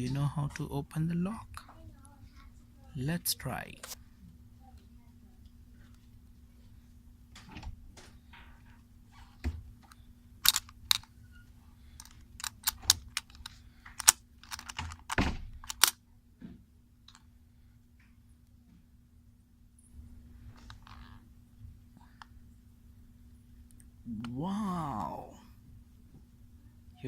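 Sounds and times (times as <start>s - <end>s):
window lock clicking and rattling: 12.0s - 16.0s.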